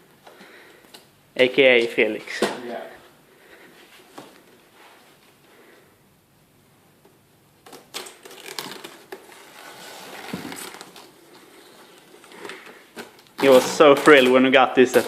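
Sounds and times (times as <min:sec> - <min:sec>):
cardboard packaging rustling: 0:07.6 - 0:15.0.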